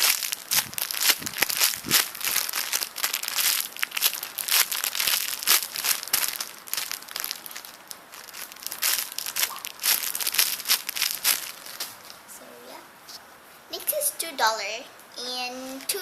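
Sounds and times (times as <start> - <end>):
packaging crinkling and rustling: 0.0 - 12.2.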